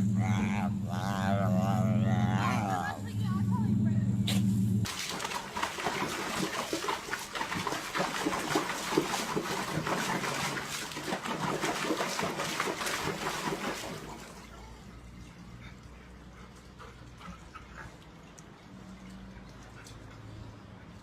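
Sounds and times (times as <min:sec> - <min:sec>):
water splashing: 0:04.9 - 0:14.7.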